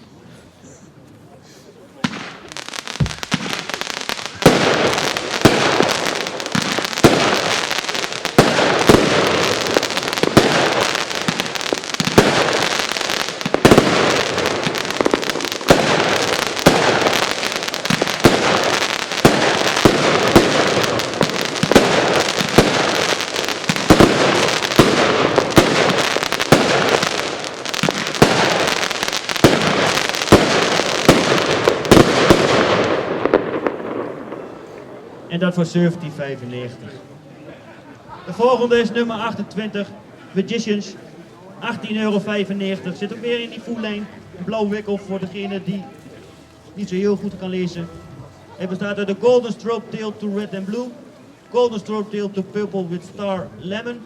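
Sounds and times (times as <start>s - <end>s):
fireworks sharp bangs: 2.0s - 35.2s
fireworks crackling: 2.0s - 36.2s.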